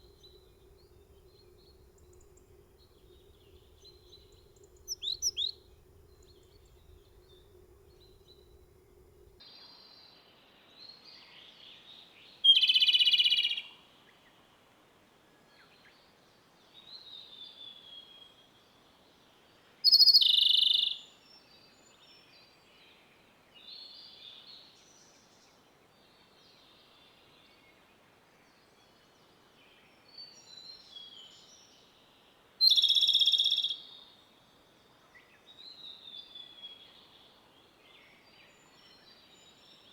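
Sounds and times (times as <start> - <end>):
songbird singing: 0.0 - 9.4, 11.1 - 13.8, 19.8 - 23.0, 23.6 - 39.9.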